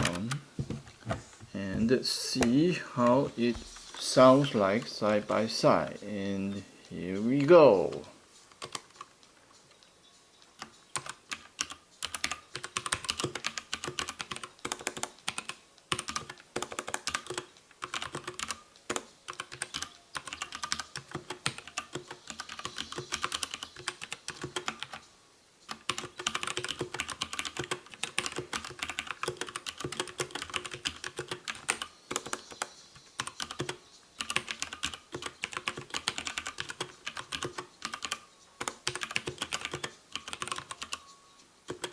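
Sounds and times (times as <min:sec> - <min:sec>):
mechanical keyboard typing: 0:00.0 - 0:00.4, 0:07.8 - 0:09.1, 0:10.6 - 0:25.0, 0:25.7 - 0:41.1, 0:41.7 - 0:41.9.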